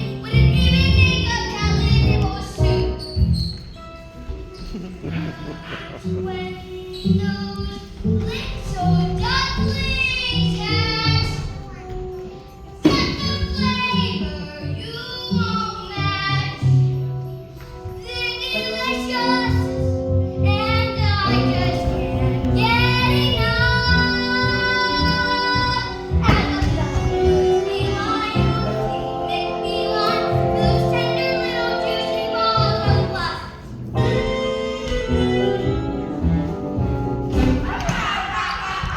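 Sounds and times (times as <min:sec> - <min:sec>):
child singing: 0:12.8 - 0:16.6, 0:18.0 - 0:35.6
instrumental accompaniment: 0:16.3 - 0:37.6.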